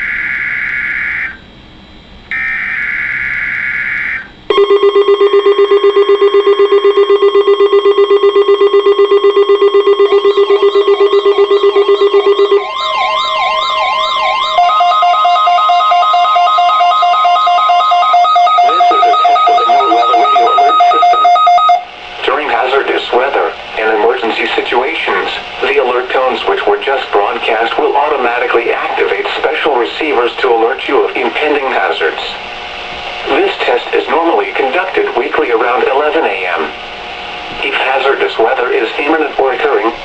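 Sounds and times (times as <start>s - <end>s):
pulsing low alarm tone: 0.0s - 22.4s
warbling and beeping alarm tones: 0.0s - 32.2s
screeching digital data burst: 6.9s - 21.4s.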